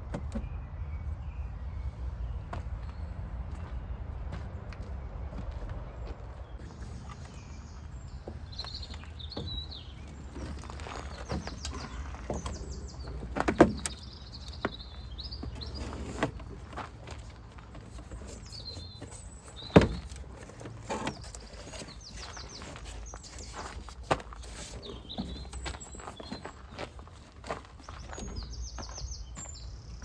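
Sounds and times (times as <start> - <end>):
knocks and clatters: 8.3 - 28.5.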